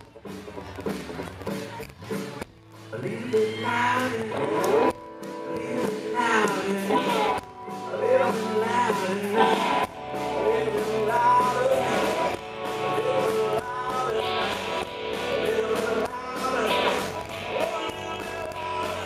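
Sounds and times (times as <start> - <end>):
live country-rock band: 0.0 - 19.0
person singing: 2.9 - 19.0.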